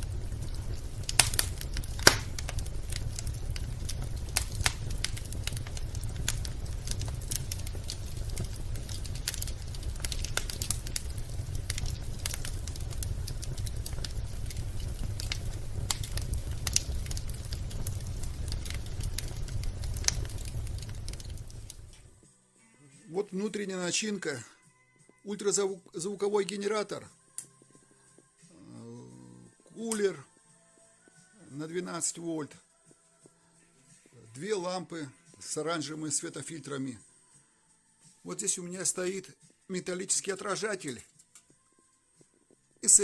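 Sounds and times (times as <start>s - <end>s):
steady low rumble: 0.0s - 22.2s
wood fire crackling: 0.0s - 22.4s, 23.1s - 24.6s, 25.2s - 37.1s, 38.0s - 43.0s.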